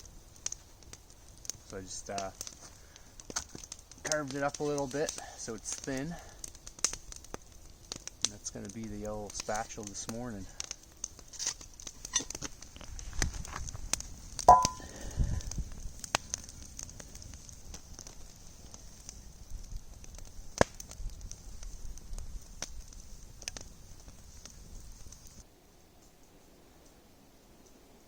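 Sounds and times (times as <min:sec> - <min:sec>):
campfire crackling and popping: 0:00.0 - 0:28.0
food sizzling in a pan: 0:11.3 - 0:13.6, 0:14.4 - 0:15.4
metal clatter with ring: 0:14.5 - 0:14.8.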